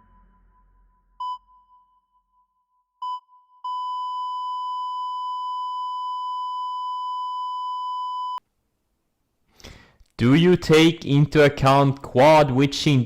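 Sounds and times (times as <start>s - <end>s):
high electronic beep: 1.2s - 1.8s.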